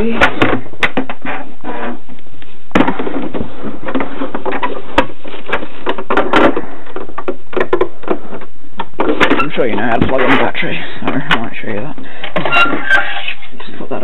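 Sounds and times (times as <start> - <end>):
plastic parts clicking and knocking: 2.8 - 11.5.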